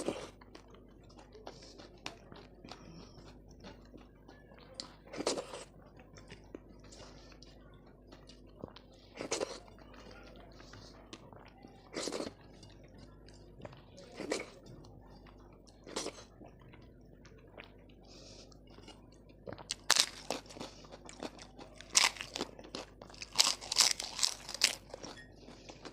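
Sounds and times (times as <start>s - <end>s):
person chewing food: 0.0s - 25.9s
crisp crunching bites: 19.7s - 25.1s.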